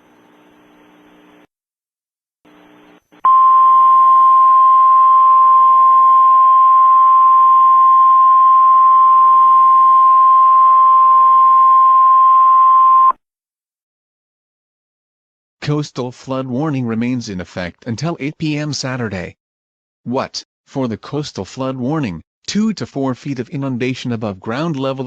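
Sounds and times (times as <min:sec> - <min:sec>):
faint radio hiss: 0:00.0 - 0:01.5.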